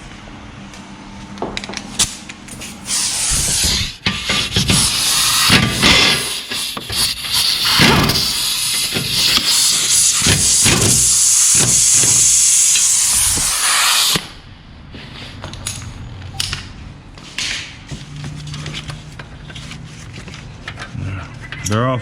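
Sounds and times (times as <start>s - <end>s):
loud steady hiss: 4.6s - 14.4s.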